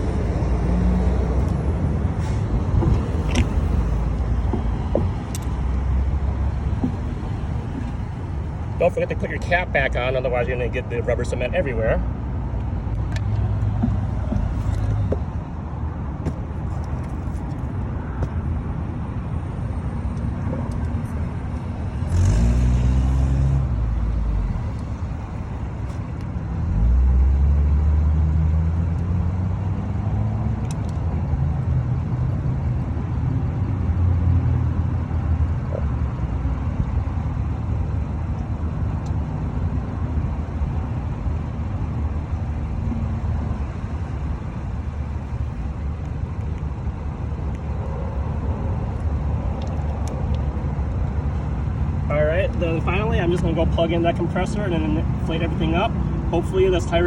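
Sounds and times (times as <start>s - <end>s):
loud vehicles passing: 0.0s - 57.0s
rumble of passing cars: 0.0s - 57.0s.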